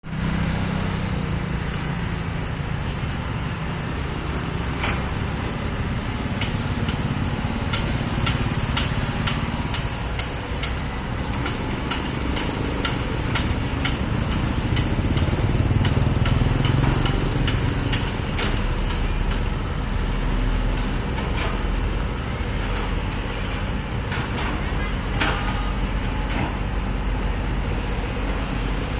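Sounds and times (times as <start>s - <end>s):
excavator diesel engine running: 0.1s - 28.9s
sharp knocks and clanks: 6.4s - 19.6s.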